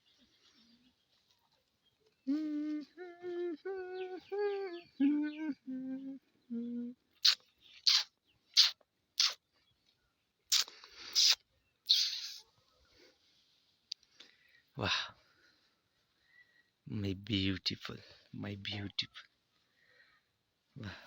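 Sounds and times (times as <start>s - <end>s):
person humming a tune: 2.2s - 7.0s.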